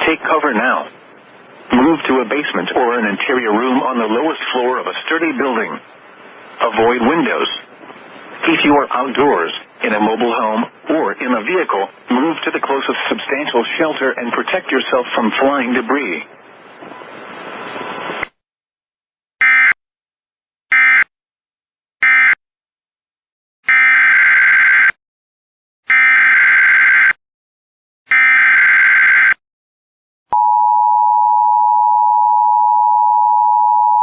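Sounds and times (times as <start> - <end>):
steady attention tone: 30.3 - 34.0.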